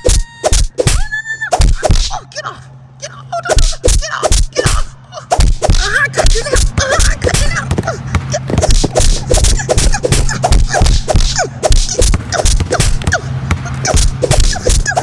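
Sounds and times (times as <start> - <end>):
high squeaky cries and yelps: 0.0 - 2.3, 3.3 - 15.0
sharp punch hits: 7.3 - 14.8.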